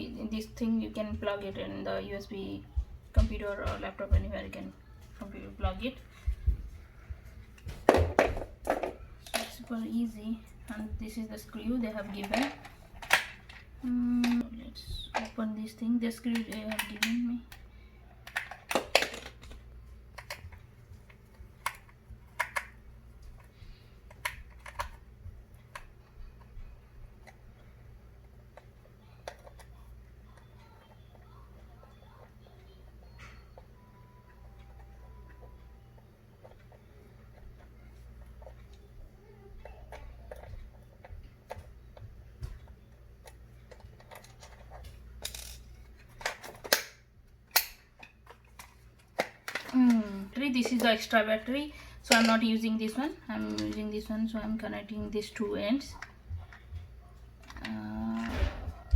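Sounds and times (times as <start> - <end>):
plastic parts clicking and tapping: 11.8 - 15.4, 16.1 - 17.6, 18.2 - 51.2
plastic clicks and taps: 18.2 - 23.5.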